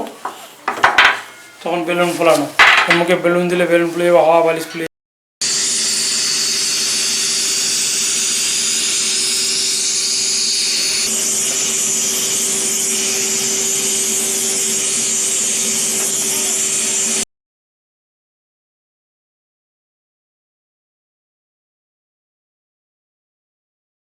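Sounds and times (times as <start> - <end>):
vacuum cleaner blowing air: 5.4 - 17.2.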